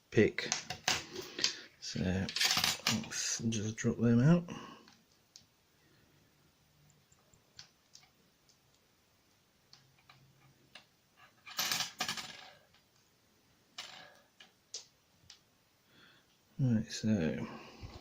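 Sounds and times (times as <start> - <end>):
lock pins clattering onto hard surface: 2.3 - 3.0, 11.4 - 12.7.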